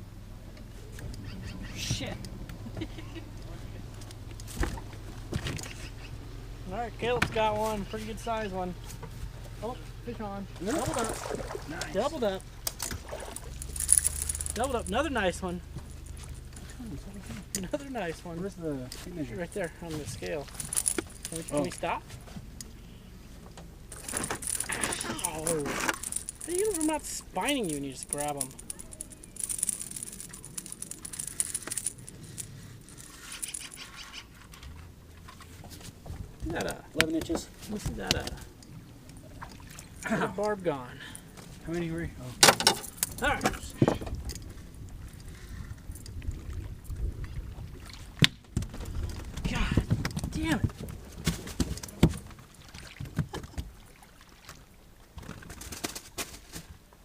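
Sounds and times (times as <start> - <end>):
knocks and thumps in boat: 3.9 - 5.8, 45.9 - 53.8
fishing gear jingling and clicking: 11.9 - 18.0, 18.8 - 22.8, 23.6 - 35.6, 42.4 - 46.2.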